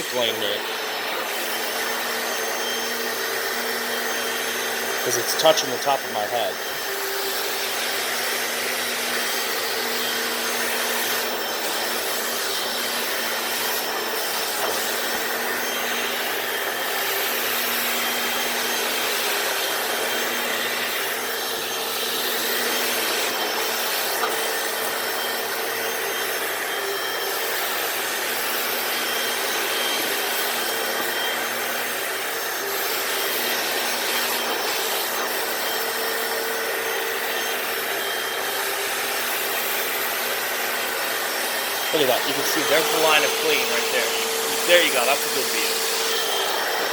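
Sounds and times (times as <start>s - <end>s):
floor cleaner suction motor drone: 0.0s - 46.9s
brushes scrubbing wet concrete: 41.9s - 46.1s.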